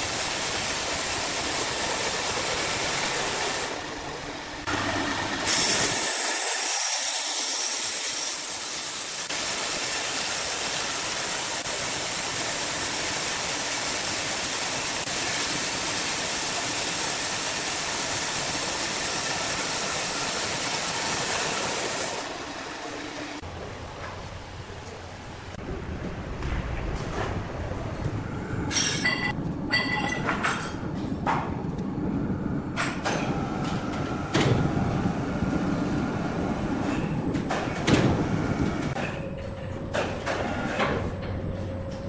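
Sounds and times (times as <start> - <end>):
sawmill machinery hissing: 0.0 - 23.4.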